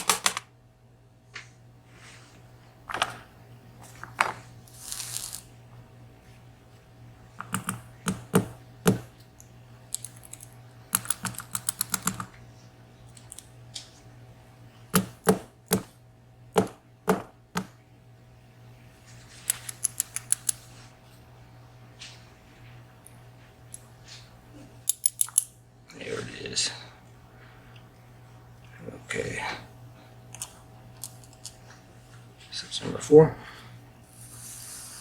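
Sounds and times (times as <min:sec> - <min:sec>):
small metal parts clicking and rattling: 0:09.9 - 0:12.2, 0:24.8 - 0:25.5.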